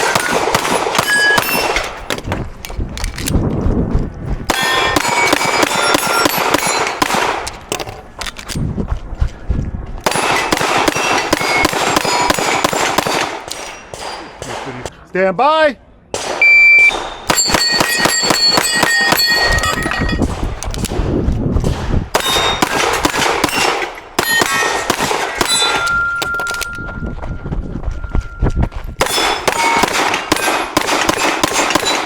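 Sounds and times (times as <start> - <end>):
steel targets clanging: 0.0 - 2.3, 4.5 - 7.9, 10.1 - 14.7, 16.8 - 20.3, 22.2 - 26.9, 29.0 - 32.0
pistol shots: 0.0 - 2.4, 4.5 - 8.6, 10.0 - 14.9, 16.1 - 26.8, 29.0 - 32.0.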